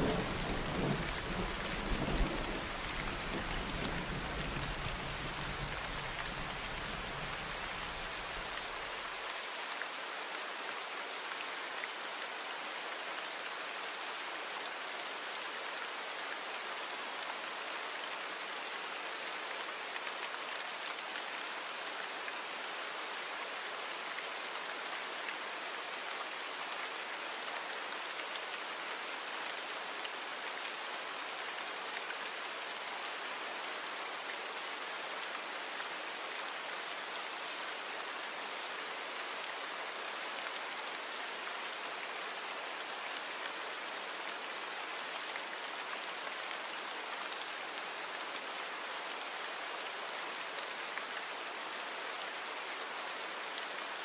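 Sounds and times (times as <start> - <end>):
steady rainfall: 0.0 - 54.0.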